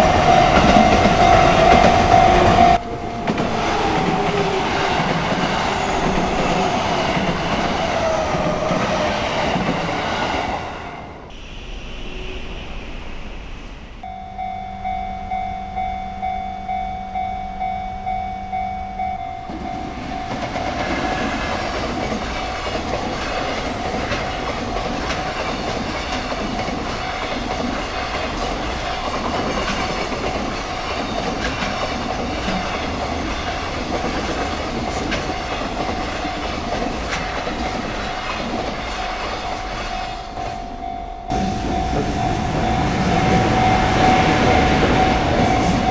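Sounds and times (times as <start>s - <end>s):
train wheels clattering: 0.0s - 10.8s, 19.5s - 45.9s
level crossing bell ringing: 14.0s - 20.5s, 40.7s - 45.9s.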